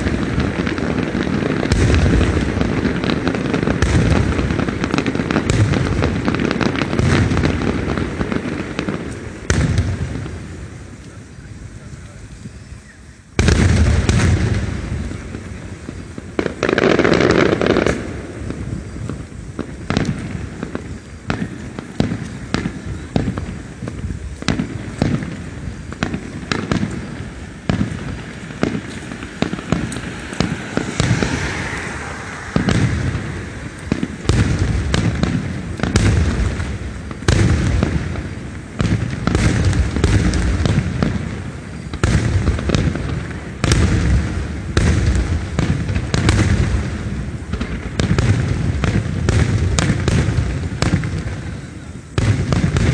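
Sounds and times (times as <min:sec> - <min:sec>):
fireworks booming and cracking: 0:00.0 - 0:52.9
fireworks crackling: 0:00.0 - 0:52.9.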